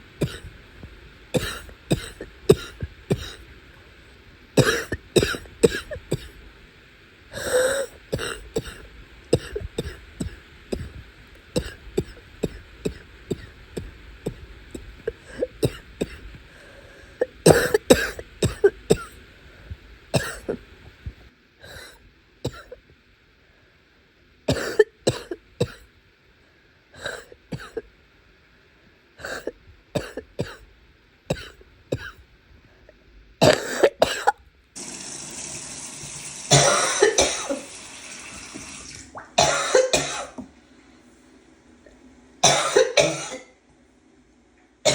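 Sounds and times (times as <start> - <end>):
person coughing harshly: 0.2 - 0.5, 1.4 - 3.4, 4.6 - 6.4, 7.4 - 11.0, 11.6 - 14.4, 15.3 - 16.3, 17.2 - 19.2, 20.2 - 20.6, 22.5 - 22.8, 24.5 - 25.8, 27.0 - 27.8, 29.2 - 30.6, 31.3 - 32.2, 33.4 - 34.4, 36.5 - 37.7, 39.4 - 40.4, 42.4 - 43.6
throat clearing: 0.2 - 0.5, 1.4 - 3.4.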